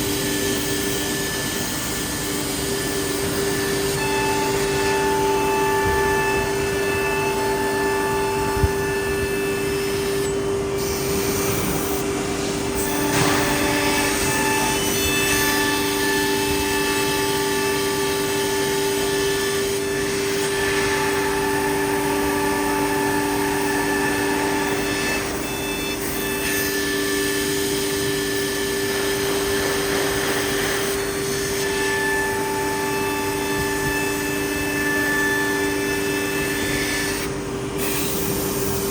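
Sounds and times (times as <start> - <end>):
high machine whine: 0.0 - 38.9
router machine hum: 0.0 - 38.9.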